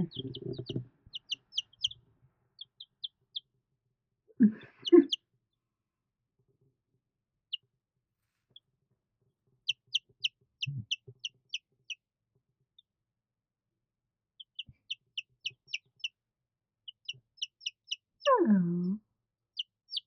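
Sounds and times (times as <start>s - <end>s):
chicks peeping: 0.0s - 2.0s, 9.6s - 12.0s, 14.4s - 16.1s, 16.9s - 18.4s, 19.6s - 20.0s.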